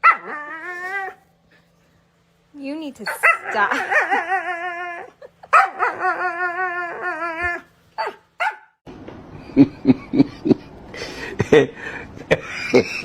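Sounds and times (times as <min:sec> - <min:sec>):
dog yelping: 0:00.0 - 0:01.2, 0:03.0 - 0:08.8
dog howling: 0:03.1 - 0:08.2.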